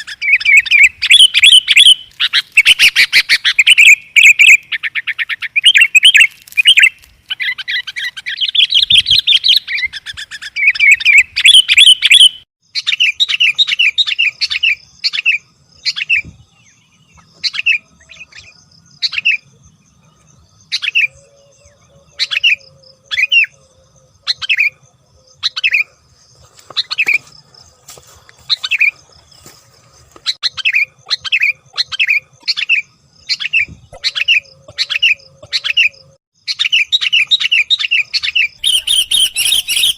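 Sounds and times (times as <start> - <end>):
bird chattering: 30.4 - 39.9.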